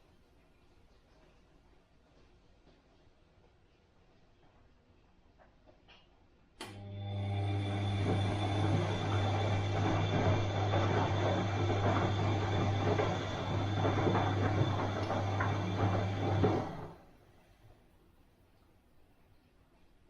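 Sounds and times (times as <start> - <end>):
washing machine churning: 6.7 - 17.1.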